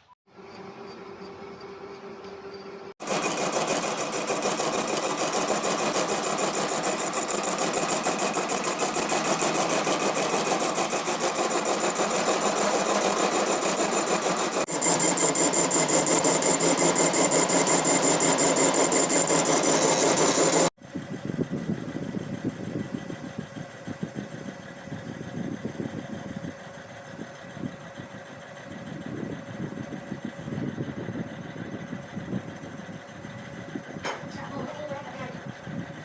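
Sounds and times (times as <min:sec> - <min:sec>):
machine clattering with high whine: 0:00.4 - 0:20.7.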